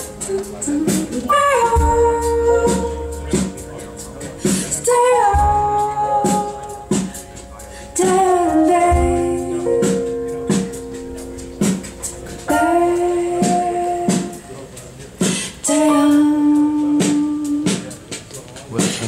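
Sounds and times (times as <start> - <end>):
woman singing long held notes: 0.0 - 3.5, 4.4 - 7.1, 7.8 - 10.2, 12.4 - 14.6, 15.4 - 17.9
low accompaniment: 0.0 - 19.0.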